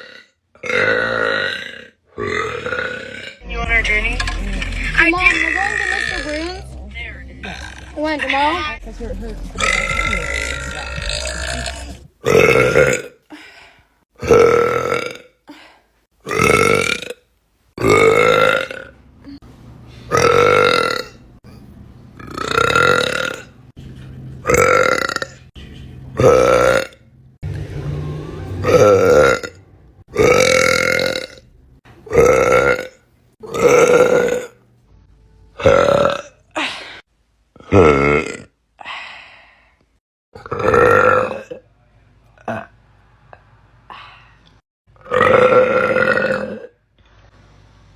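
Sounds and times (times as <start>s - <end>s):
person burping loudly: 0.0s - 3.4s, 7.4s - 8.2s, 9.6s - 13.2s, 14.2s - 15.4s, 16.2s - 17.2s, 17.8s - 19.4s, 20.1s - 21.2s, 22.2s - 23.6s, 24.4s - 25.4s, 26.2s - 27.0s, 28.6s - 34.6s, 35.6s - 36.4s, 37.6s - 38.6s, 40.4s - 41.6s, 42.4s - 42.8s, 45.0s - 46.8s.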